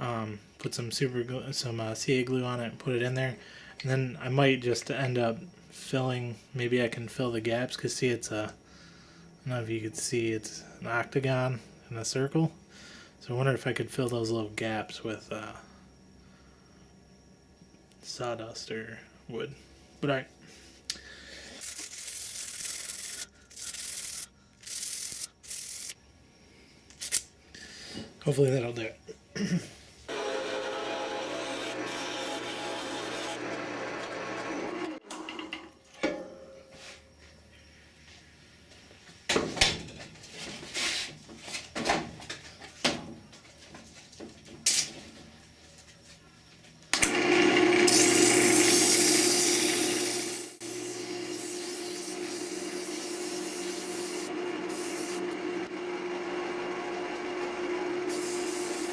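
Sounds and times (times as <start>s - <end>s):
power tool motor humming: 30.1s - 35.0s, 47.0s - 58.9s
sandpaper on spinning wood: 51.2s - 55.2s, 58.1s - 58.9s
sandpaper rubbing on wood: 58.1s - 58.9s.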